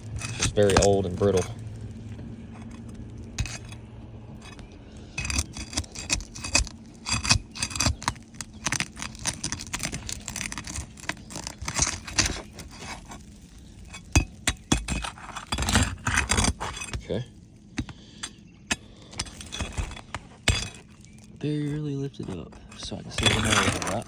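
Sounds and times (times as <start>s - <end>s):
tool scraping under roof shingles: 0.0s - 24.0s.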